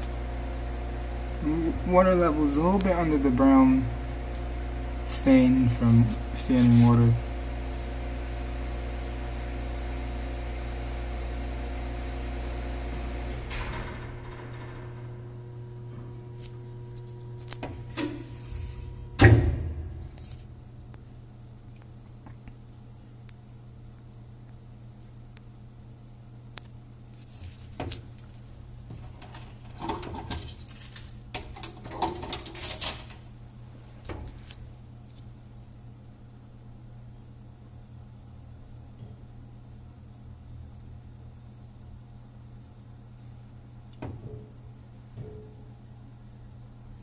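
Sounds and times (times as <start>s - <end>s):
dishwasher humming: 0.0s - 16.3s, 17.5s - 20.9s, 27.6s - 34.8s, 43.8s - 47.0s
machine shutoff clunk: 12.9s - 15.4s, 19.0s - 20.2s.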